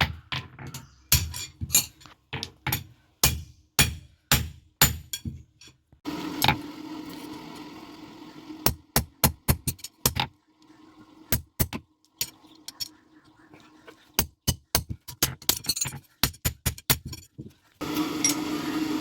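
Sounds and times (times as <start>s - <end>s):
hammer striking iron on anvil: 1.1s - 1.9s, 2.7s - 5.4s.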